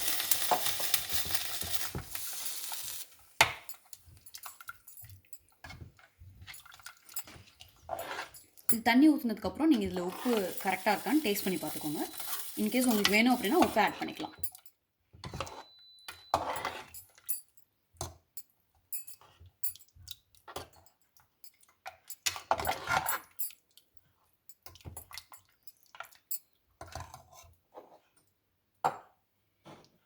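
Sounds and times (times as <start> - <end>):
metal spoon clinking on pot: 3.4 - 9.0, 10.1 - 23.7.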